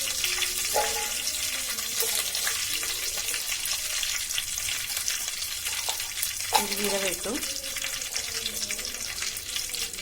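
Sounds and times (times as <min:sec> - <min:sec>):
spices sizzling in hot oil: 0:00.0 - 0:10.0.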